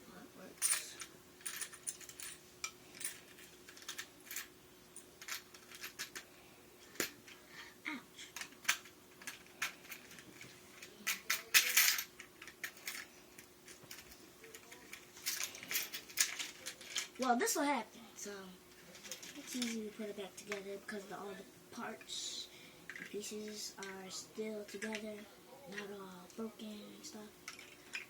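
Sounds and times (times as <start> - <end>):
coins and plastic pieces clattering: 0.6 - 6.3, 6.9 - 7.4, 8.4 - 17.2, 18.7 - 20.6, 27.4 - 28.0.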